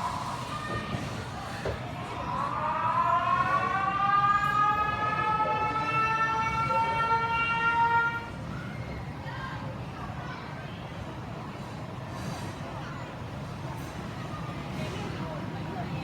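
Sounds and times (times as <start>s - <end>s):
siren-like wail: 2.3s - 8.3s.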